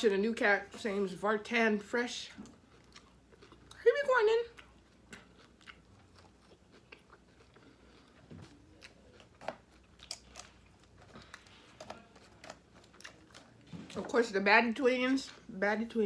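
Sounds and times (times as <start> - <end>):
person chewing: 2.4 - 3.8, 4.5 - 13.7.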